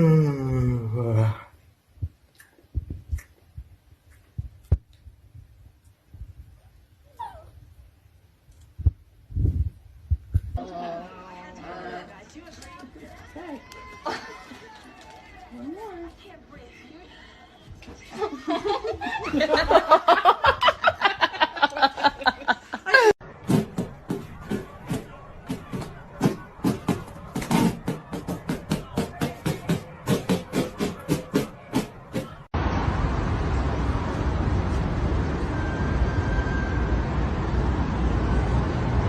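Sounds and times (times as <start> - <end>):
dog whining: 7.1 - 7.6
person laughing hard: 18.5 - 23.2.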